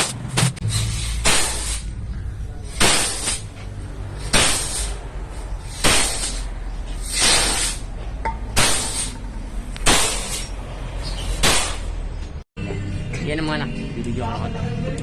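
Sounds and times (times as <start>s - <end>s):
steady low hum: 0.0s - 10.8s
pressurised air hissing blasts: 0.0s - 12.0s.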